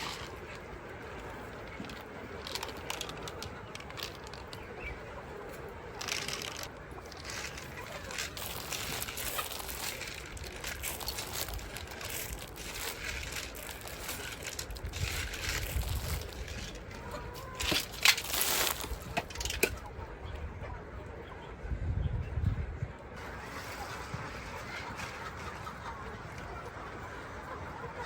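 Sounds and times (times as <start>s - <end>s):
crackling rustle: 0.0s - 19.8s
chickens clucking: 0.0s - 28.0s.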